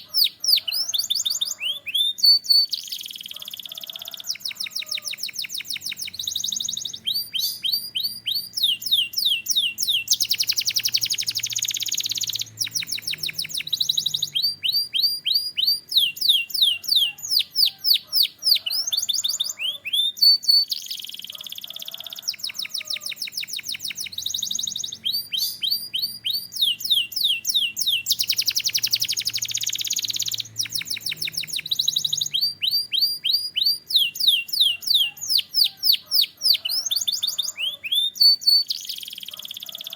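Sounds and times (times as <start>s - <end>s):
canary singing: 0.0s - 39.9s.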